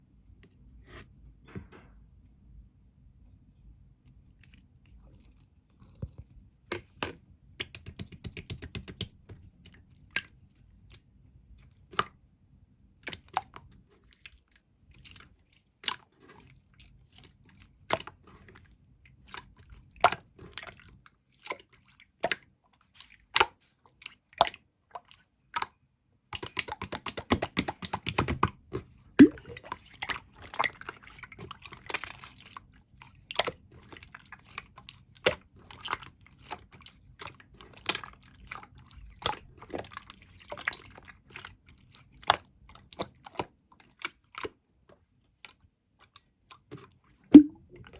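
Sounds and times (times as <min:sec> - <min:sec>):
slime popping and clicking: 0:29.2 - 0:29.5, 0:47.3 - 0:47.6.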